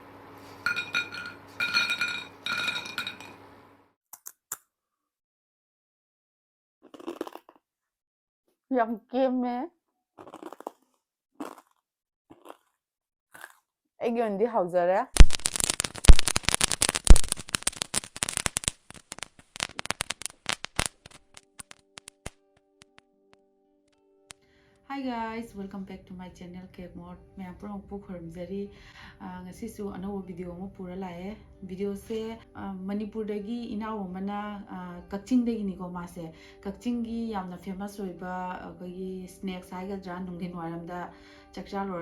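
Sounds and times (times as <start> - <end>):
ringing glass or metal clinks: 0.7 - 3.4
crunchy food being chewed: 6.8 - 7.6, 10.2 - 13.7.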